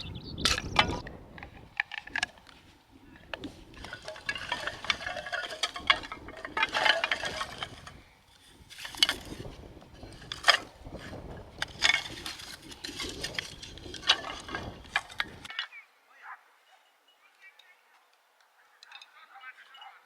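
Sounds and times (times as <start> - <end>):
sharp clinks and knocks: 0.4 - 2.6, 3.3 - 15.6
rustling and scraping: 0.5 - 15.6.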